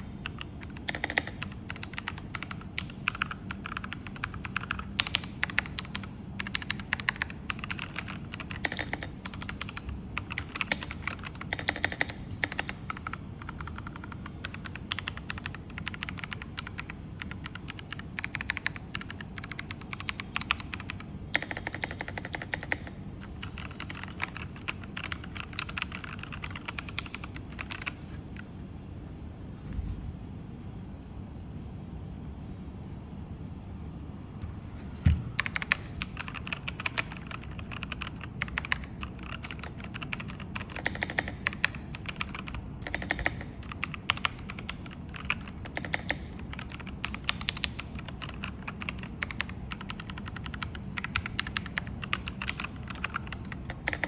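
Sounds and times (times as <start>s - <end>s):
mechanical keyboard typing: 0.0s - 28.5s, 35.1s - 54.0s.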